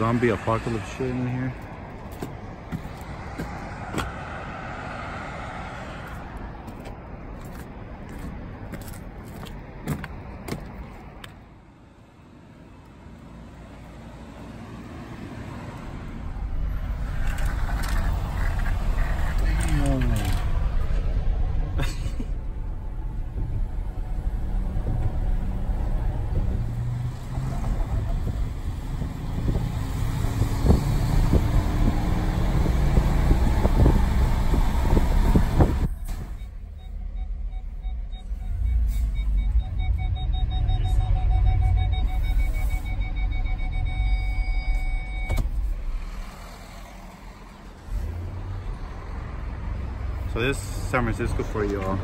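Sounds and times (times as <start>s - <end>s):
road rumble: 0.0s - 52.0s.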